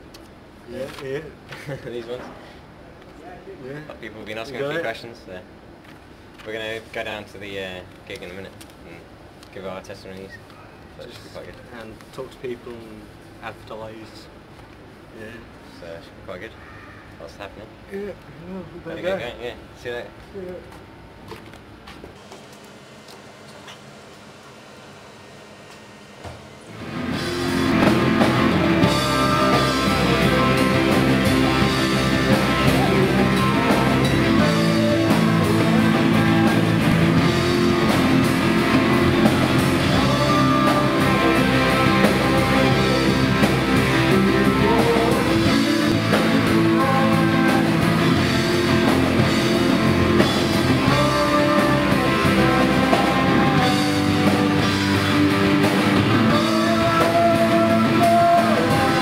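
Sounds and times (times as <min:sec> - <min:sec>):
rock music with guitar and drums: 0:26.7 - 0:59.0.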